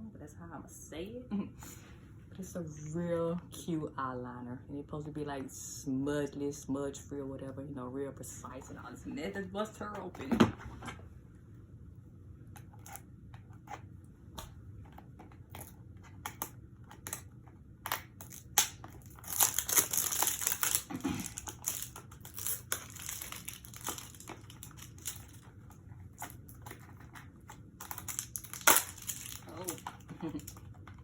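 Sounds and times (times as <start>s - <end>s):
packaging crinkling and tearing: 15.2s - 31.0s
packaging handling clicks: 26.2s - 30.8s.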